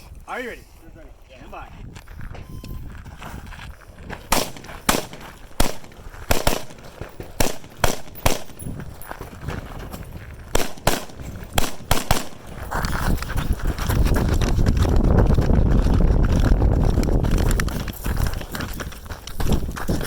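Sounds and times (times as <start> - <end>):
rifle shots: 4.2 - 8.7, 10.5 - 12.6.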